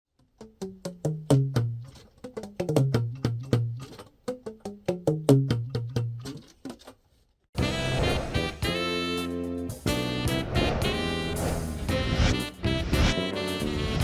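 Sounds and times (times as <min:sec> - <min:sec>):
struck wooden notes descending: 0:09.9 - 0:14.0.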